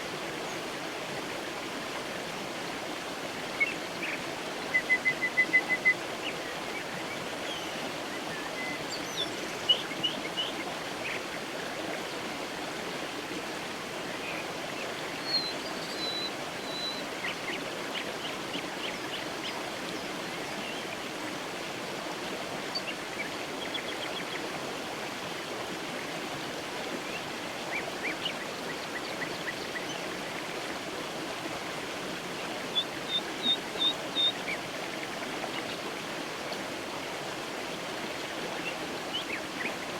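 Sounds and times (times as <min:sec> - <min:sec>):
creek water flowing: 0:00.0 - 0:39.9
small birds chirping: 0:32.7 - 0:34.6.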